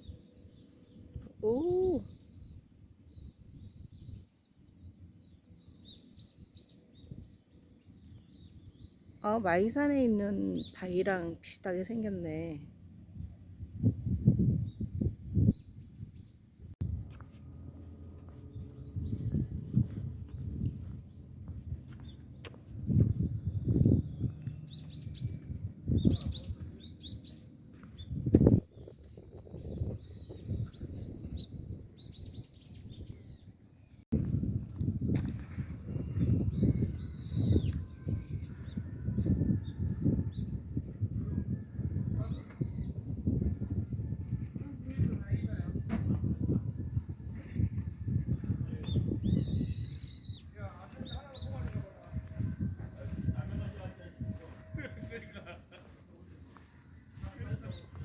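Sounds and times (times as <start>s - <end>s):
low background rumble: 16.8s - 26.0s
small birds chirping: 17.1s - 34.0s, 35.9s - 38.9s, 48.8s - 52.3s.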